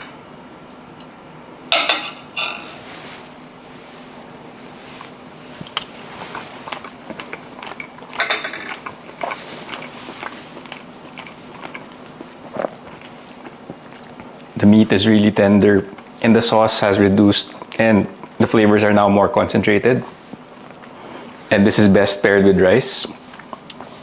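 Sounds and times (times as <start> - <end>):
cutlery clinking and scraping on a dish: 7.8 - 8.9.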